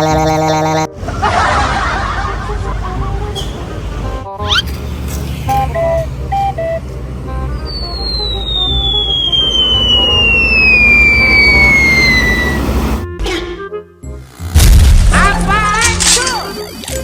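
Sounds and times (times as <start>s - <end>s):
low engine rumble: 0.9s - 13.1s
falling whistle: 7.5s - 13.0s.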